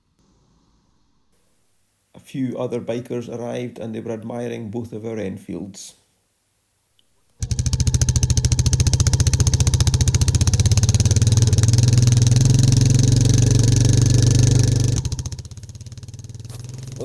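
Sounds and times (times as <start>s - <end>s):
motorcycle engine running: 7.4s - 17.0s.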